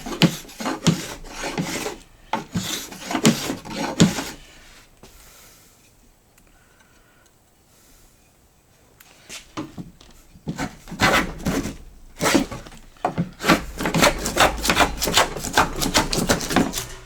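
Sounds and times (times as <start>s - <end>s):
hand plane scraping across wood: 0.0s - 4.8s, 10.4s - 17.0s.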